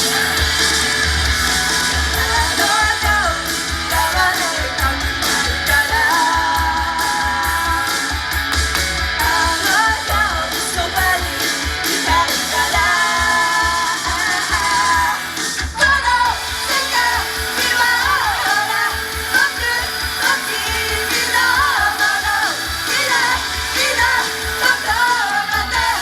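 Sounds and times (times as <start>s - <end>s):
distorted electric guitar: 0.0s - 26.0s
rapid pounding drums: 0.0s - 26.0s
person singing: 1.5s - 8.2s, 9.2s - 26.0s.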